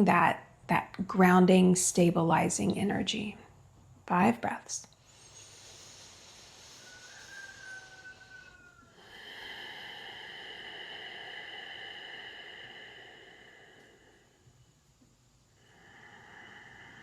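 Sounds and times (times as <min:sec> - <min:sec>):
person breathing deeply: 0:05.0 - 0:14.8, 0:15.5 - 0:17.0.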